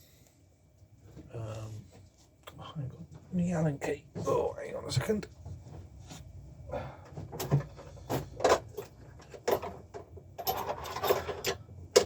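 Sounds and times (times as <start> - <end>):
hand tools rattling and scraping: 7.0 - 12.0.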